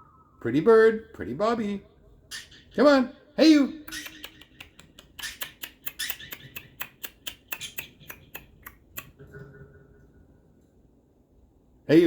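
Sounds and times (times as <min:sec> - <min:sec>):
parrot sharp dry clicks: 0:03.9 - 0:09.2.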